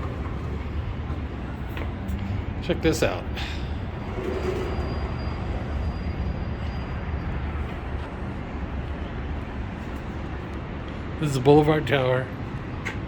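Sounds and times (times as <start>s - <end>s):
distant traffic rumble: 0.0s - 13.0s.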